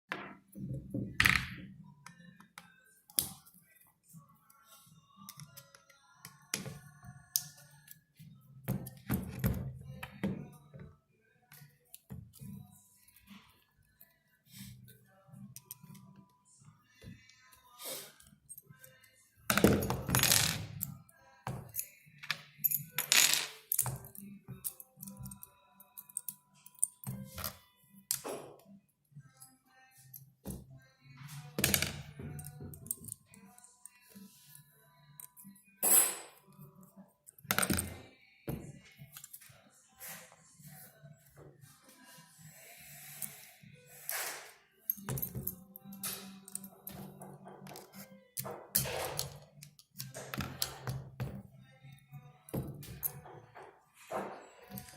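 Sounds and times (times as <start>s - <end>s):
metallic clicks and clinks: 44.9s - 47.1s.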